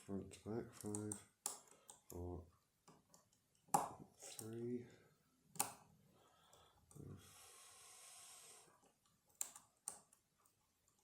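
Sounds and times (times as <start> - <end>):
soft breath: 6.0 - 8.8.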